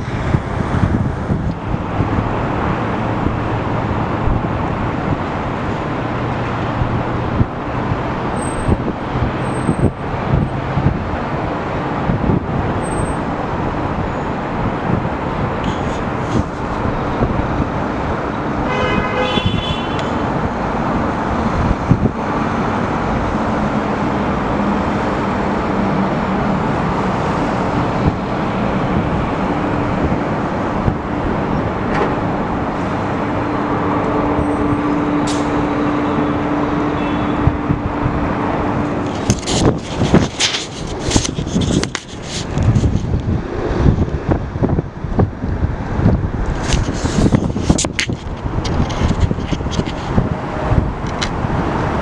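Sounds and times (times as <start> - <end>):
steady engine drone: 0.0 - 52.0
wind buffeting microphone: 0.0 - 52.0
short horn toot: 18.7 - 20.2, 34.0 - 37.9.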